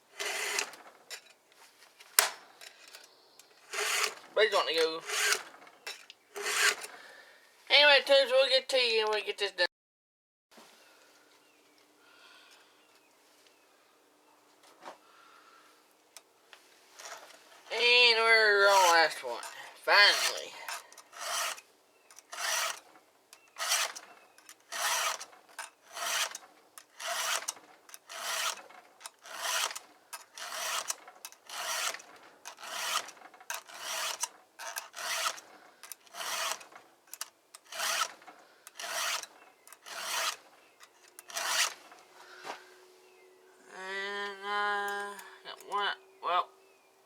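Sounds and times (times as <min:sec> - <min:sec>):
file rasping on chainsaw chain: 0:00.1 - 0:01.3, 0:03.7 - 0:07.0, 0:18.6 - 0:41.9.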